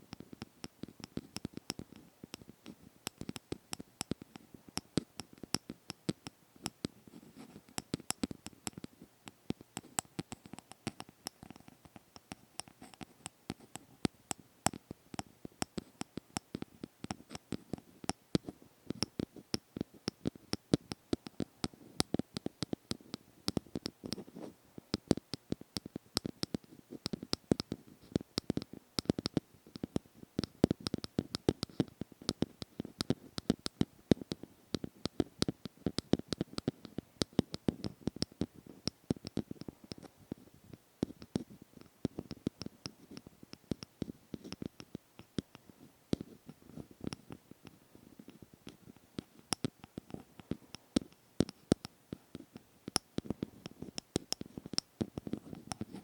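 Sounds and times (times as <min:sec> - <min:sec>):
rapid sharp tapping clicks: 0:00.0 - 0:56.0
light scratching: 0:53.2 - 0:56.0.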